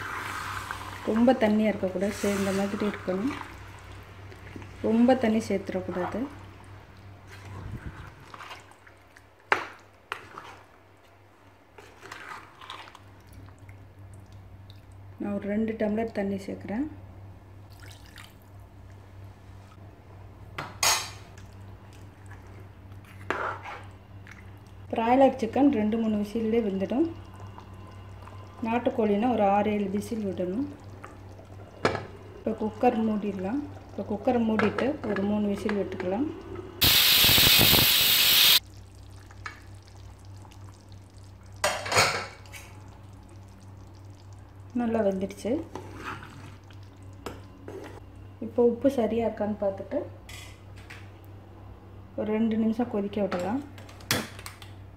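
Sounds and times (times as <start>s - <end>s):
water poured into a pot: 17.7s - 18.4s
pressure cooker steam whistling: 36.8s - 38.6s.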